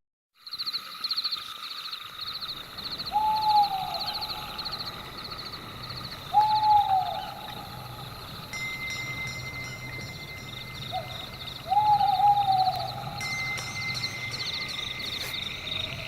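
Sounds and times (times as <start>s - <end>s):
insects chirping in trills: 0.4s - 16.0s
owl hooting: 3.1s - 4.9s, 6.3s - 8.0s, 10.9s - 13.3s.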